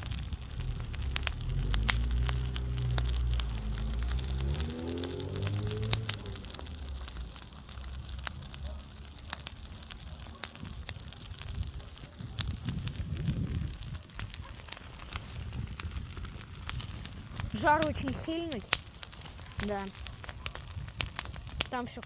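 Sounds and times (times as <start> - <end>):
low rumble: 0.0 - 7.4
bonfire crackling and popping: 0.0 - 22.0.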